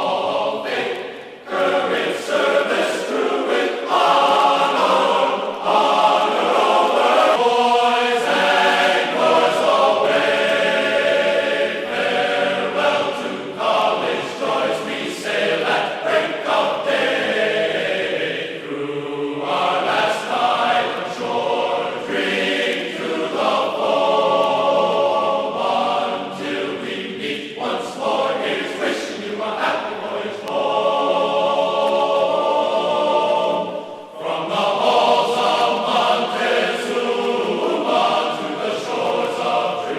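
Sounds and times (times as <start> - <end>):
music with choir-like singing: 0.0 - 39.9.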